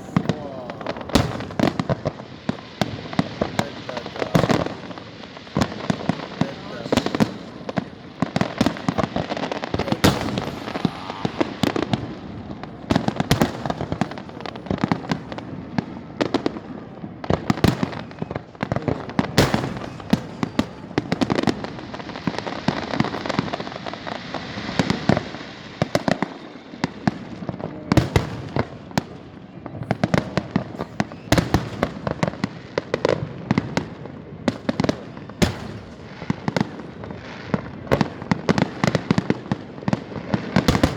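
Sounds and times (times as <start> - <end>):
fireworks crackling hiss: 0.0 - 15.7, 19.0 - 26.2
fireworks bangs and bursts: 0.0 - 40.9.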